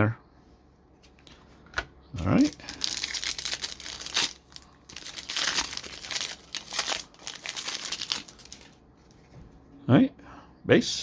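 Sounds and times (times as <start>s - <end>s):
wrapper tearing and crinkling: 2.4s - 8.8s.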